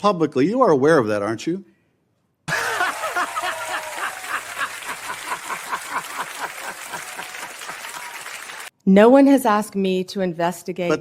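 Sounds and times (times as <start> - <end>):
crowd applause: 2.5 - 8.7
crowd laughter: 2.5 - 8.7.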